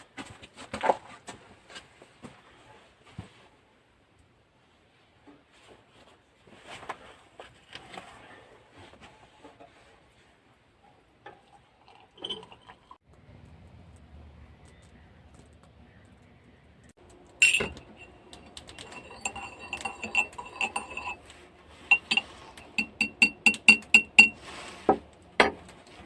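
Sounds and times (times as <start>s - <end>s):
spoon clinking against cup: 11.9s - 12.9s, 17.4s - 21.2s, 21.9s - 24.4s.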